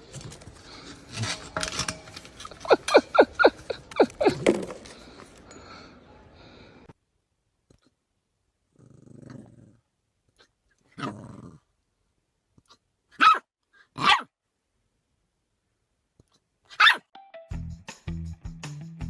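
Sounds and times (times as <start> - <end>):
dog growling low: 8.7 - 9.9, 11.0 - 11.7
dog barking sharply: 13.2 - 13.4, 14.0 - 14.3, 16.7 - 17.0.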